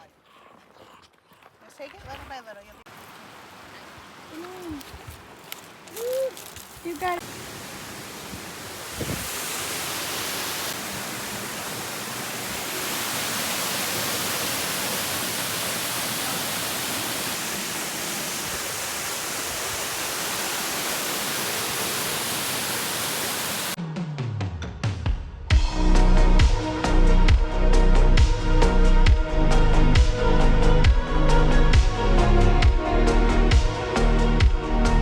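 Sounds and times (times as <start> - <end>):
waterfall rushing: 7.1 - 23.8
music: 23.8 - 35.0.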